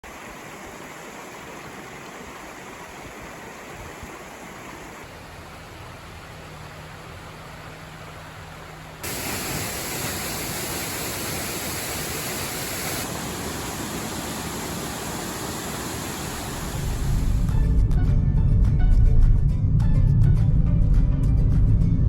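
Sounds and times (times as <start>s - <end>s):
waterfall roaring: 0.0s - 17.6s.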